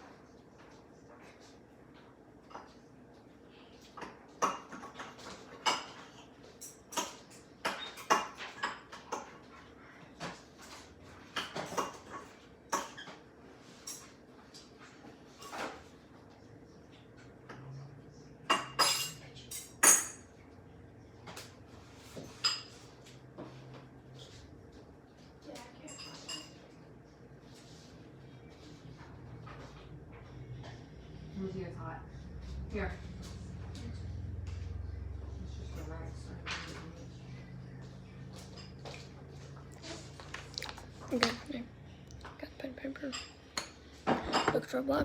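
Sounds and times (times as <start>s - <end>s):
dishes and cutlery clinking: 3.8s - 16.1s, 18.4s - 20.4s, 21.3s - 24.4s, 25.6s - 26.8s, 35.6s - 45.0s.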